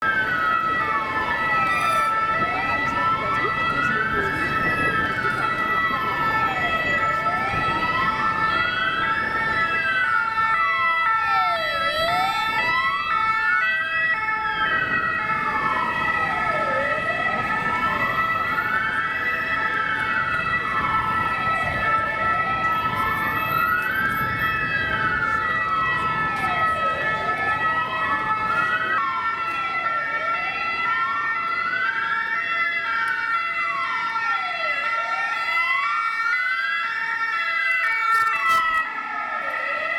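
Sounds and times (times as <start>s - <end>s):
steady high siren tone: 0.0s - 39.9s
wailing siren: 0.0s - 39.9s
short repeated siren tones: 1.0s - 2.6s, 37.8s - 38.8s.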